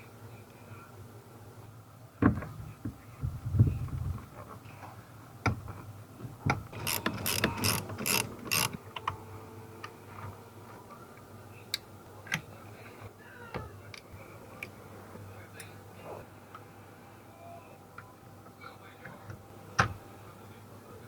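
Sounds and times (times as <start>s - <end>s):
ratchet wrench clicking: 6.8s - 8.8s.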